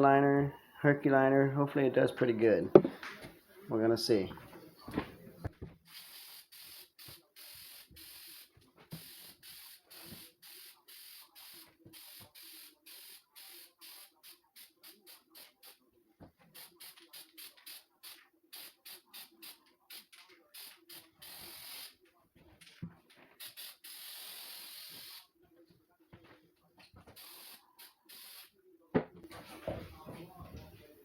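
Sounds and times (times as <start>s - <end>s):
spray gun hissing bursts: 5.9s - 15.1s, 27.2s - 28.5s.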